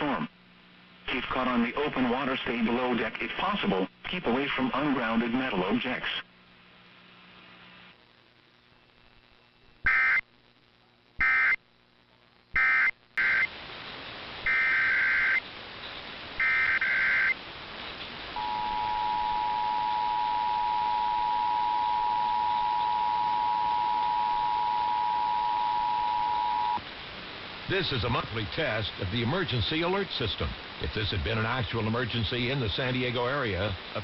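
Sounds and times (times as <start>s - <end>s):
radio hiss: 0.0s - 34.0s
digital data bursts warbling buzz: 12.6s - 13.5s, 14.4s - 15.4s, 16.4s - 17.4s.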